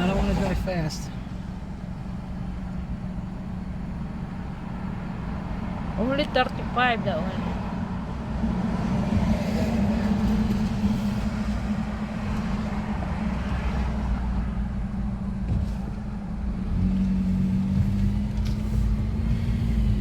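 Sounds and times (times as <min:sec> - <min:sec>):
car engine and road noise: 0:00.0 - 0:20.0.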